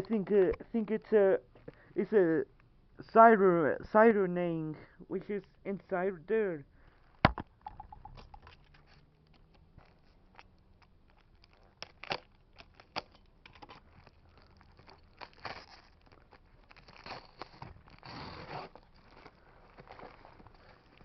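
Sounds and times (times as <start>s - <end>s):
packaging clicks and snaps: 7.7s - 17.8s
packaging rustling and crinkling: 8.6s - 21.0s.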